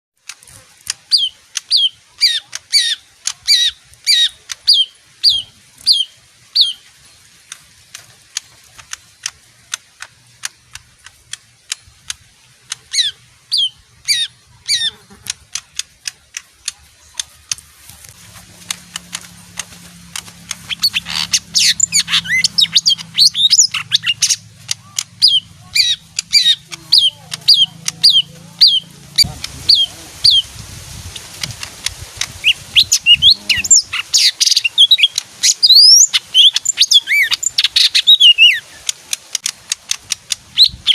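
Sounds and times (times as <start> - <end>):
bird singing whistles and warble: 1.1 - 6.8, 12.9 - 15.0, 20.5 - 30.5, 32.4 - 38.9, 40.5 - 40.9
low steady hum: 3.0 - 34.0.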